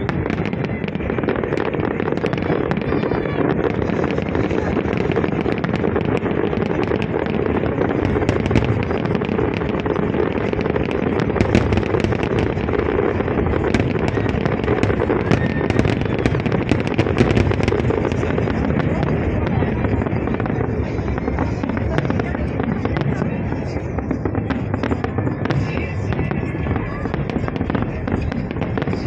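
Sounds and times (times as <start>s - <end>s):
sharp crackling pops: 0.0s - 26.0s
fireworks bursts rumbling: 0.0s - 29.0s.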